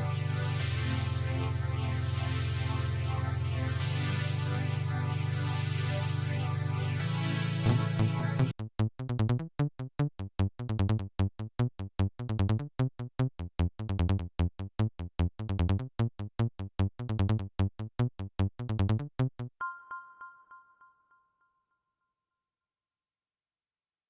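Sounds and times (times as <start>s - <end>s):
pulsed synthesizer sequence: 0.0s - 8.5s
bell-like tone: 19.6s - 21.8s.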